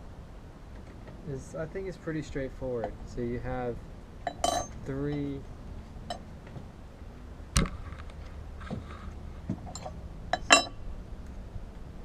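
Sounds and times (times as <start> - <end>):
metal parts clinking together: 4.3 - 5.3, 9.7 - 10.8.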